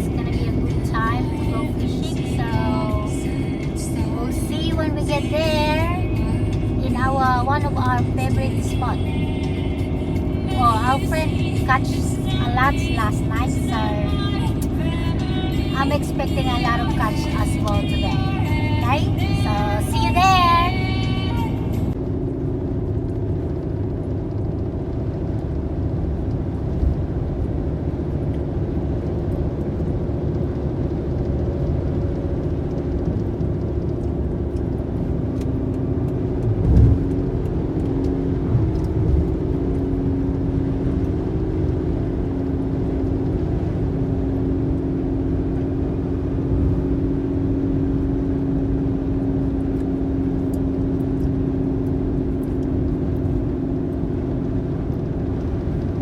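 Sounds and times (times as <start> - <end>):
car engine and road rumble: 0.0 - 56.0
low hum: 0.0 - 56.0.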